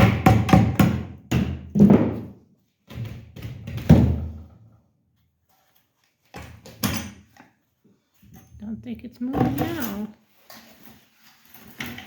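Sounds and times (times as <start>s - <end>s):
hammer striking wood: 0.0s - 2.3s.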